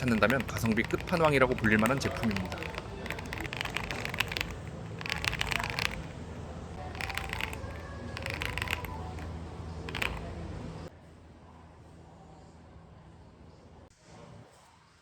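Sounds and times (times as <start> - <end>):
mechanical keyboard typing: 0.0 - 10.3.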